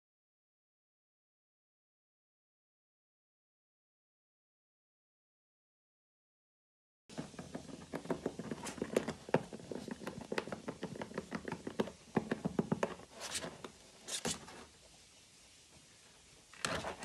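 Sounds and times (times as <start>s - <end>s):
rabbit chewing: 7.6s - 14.8s.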